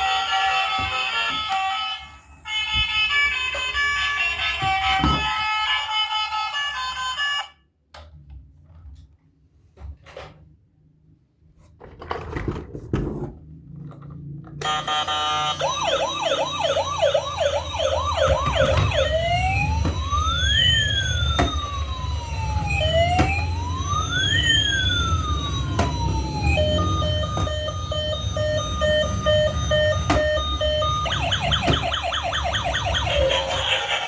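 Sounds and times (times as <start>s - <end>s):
toy electronic siren: 0.0s - 7.6s, 14.6s - 34.0s.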